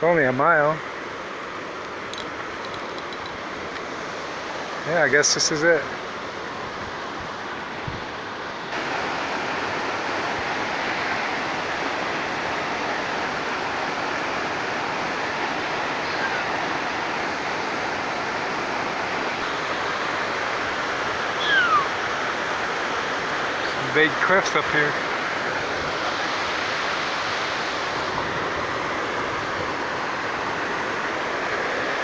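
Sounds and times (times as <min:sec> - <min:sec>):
waterfall rushing: 0:08.7 - 0:32.0.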